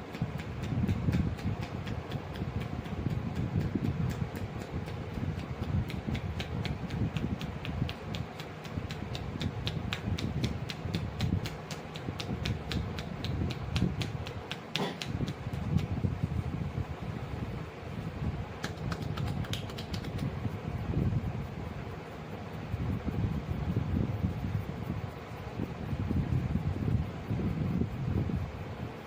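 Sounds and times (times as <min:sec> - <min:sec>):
hands tapping in head massage: 0:00.0 - 0:16.8, 0:18.4 - 0:20.5.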